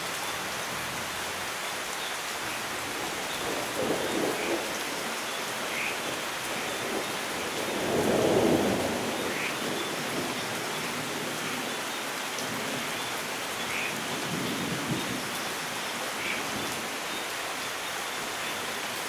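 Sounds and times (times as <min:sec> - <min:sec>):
steady rain hissing: 0:00.0 - 0:19.0
thunder rumbling: 0:03.4 - 0:11.4.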